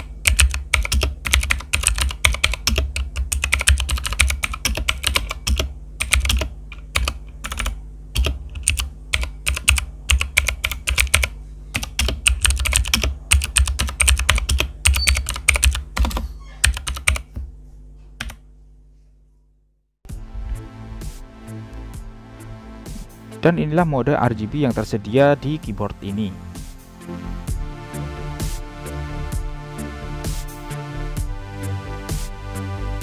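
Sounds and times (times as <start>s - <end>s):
mechanical keyboard typing: 0.0s - 17.3s
steady low hum: 0.0s - 33.0s.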